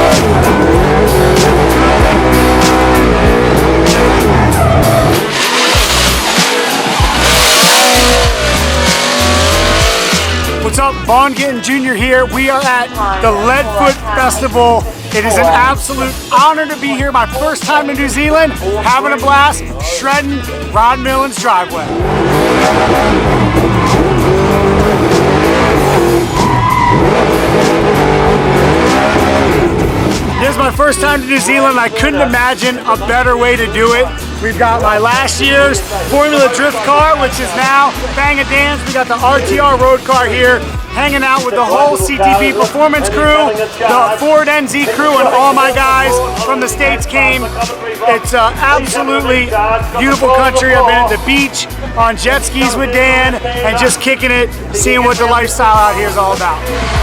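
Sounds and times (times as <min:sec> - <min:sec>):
tyres squealing: 0:00.0 - 0:10.8, 0:21.9 - 0:32.1
car engine revving: 0:00.0 - 0:11.4, 0:12.0 - 0:57.0
music track: 0:00.0 - 0:57.0
tyre squeal: 0:22.6 - 0:29.3.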